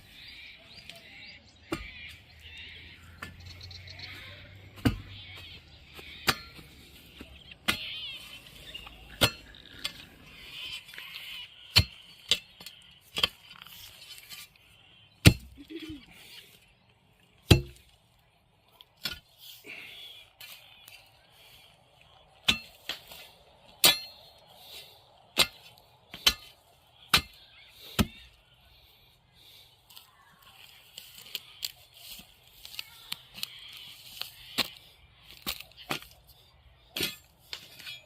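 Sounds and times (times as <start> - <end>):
digging tool striking soil: 4.7 - 8.0, 11.7 - 14.5, 15.2 - 15.6, 17.4 - 18.0, 22.4 - 24.4, 25.3 - 28.4, 31.3 - 38.0.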